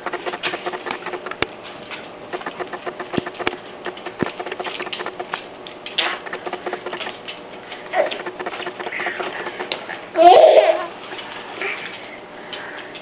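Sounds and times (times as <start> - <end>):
baby eating with smacking clicks: 0.0 - 10.1.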